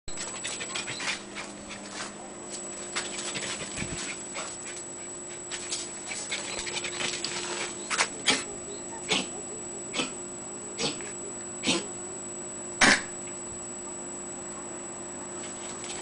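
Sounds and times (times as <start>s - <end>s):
faint steady hum: 0.1s - 16.0s
dog panting: 0.2s - 2.2s, 6.0s - 8.0s.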